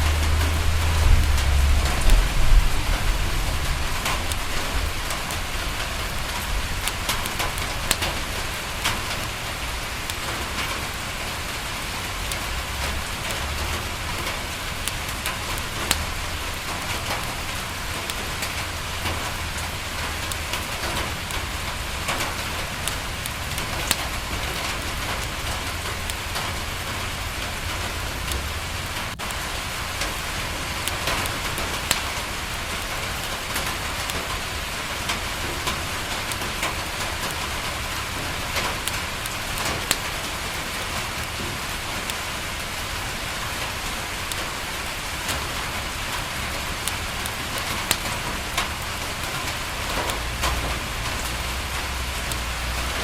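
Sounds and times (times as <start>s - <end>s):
low rumble: 0.0s - 6.8s
rain on window glass: 0.0s - 53.0s
sharp ticks: 12.2s - 17.3s, 30.8s - 32.2s.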